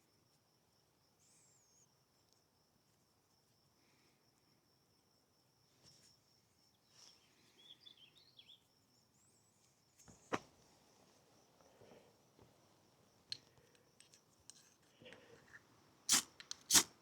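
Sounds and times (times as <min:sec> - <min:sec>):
bird chirping: 0:07.0 - 0:08.7.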